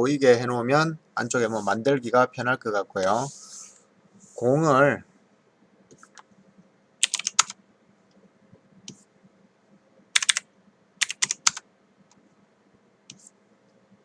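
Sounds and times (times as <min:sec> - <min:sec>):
computer keyboard typing: 0:05.9 - 0:06.3, 0:07.0 - 0:07.6, 0:10.2 - 0:11.6.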